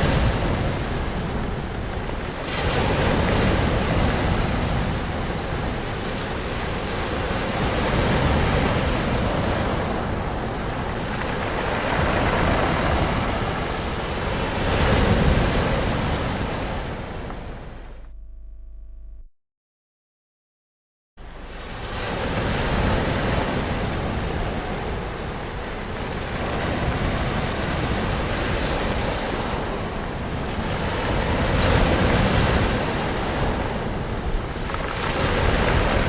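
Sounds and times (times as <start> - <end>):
ocean waves breaking on shore: 0.0 - 18.0, 21.2 - 36.0.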